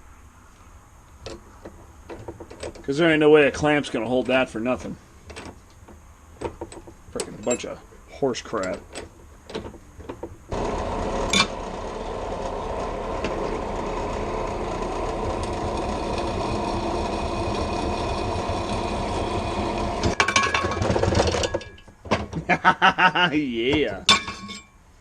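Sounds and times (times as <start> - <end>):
steady mechanical buzz: 10.5 - 20.2
metallic knocks: 23.7 - 24.7.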